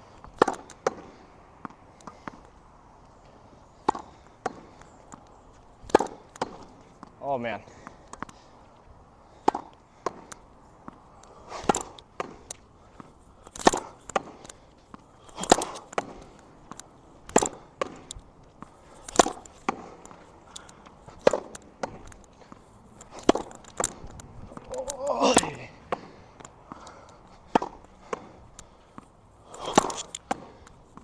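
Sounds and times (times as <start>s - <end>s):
racket hitting tennis ball: 0.2s - 2.4s, 3.8s - 7.2s, 9.4s - 31.0s
ball bouncing on wet court: 29.6s - 30.4s.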